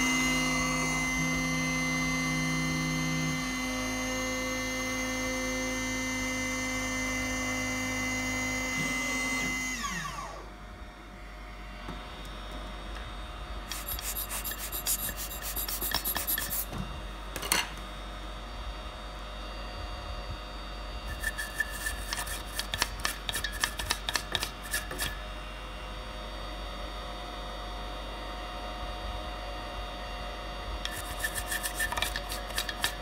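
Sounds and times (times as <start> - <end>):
milling spindle whining: 21.1 - 25.1
rapid scraping clicks: 21.1 - 25.1.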